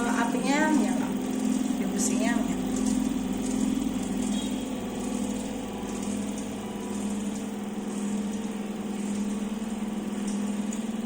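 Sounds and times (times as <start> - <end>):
motor humming: 0.0 - 11.0.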